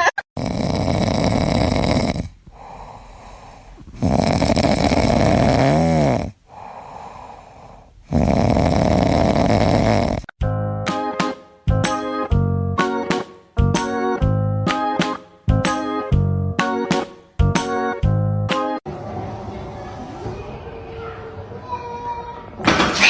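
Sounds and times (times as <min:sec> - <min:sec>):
heavy snoring: 0:00.4 - 0:10.3
quiet breathing: 0:02.2 - 0:04.1, 0:06.3 - 0:08.1
music: 0:10.4 - 0:20.6.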